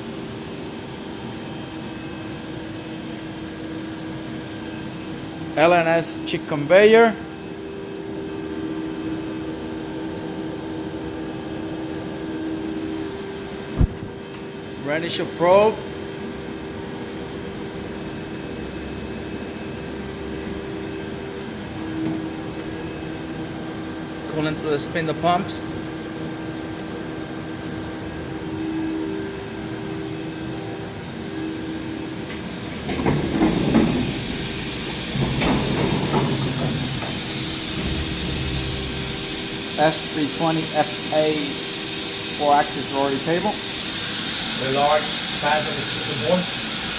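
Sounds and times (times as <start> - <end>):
shop machinery humming: 0.0 - 46.9
rattling rumbling: 32.4 - 40.4.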